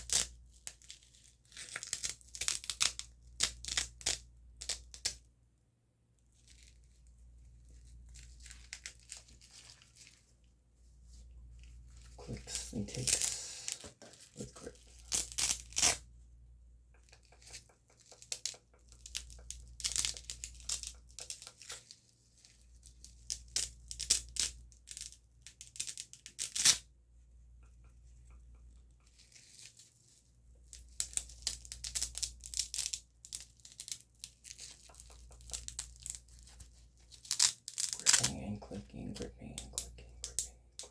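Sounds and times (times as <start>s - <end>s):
crackly asmr clicks: 1.8s - 5.2s, 16.8s - 22.0s, 30.6s - 38.3s, 39.1s - 40.9s.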